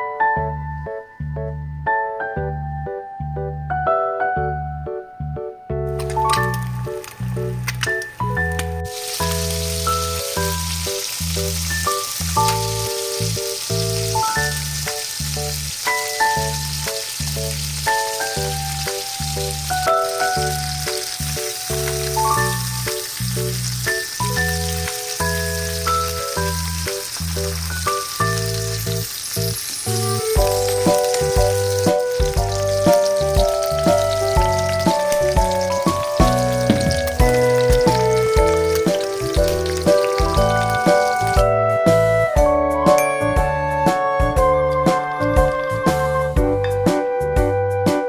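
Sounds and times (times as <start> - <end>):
background music: 0.0 - 48.0
food sizzling in a pan: 6.4 - 41.4.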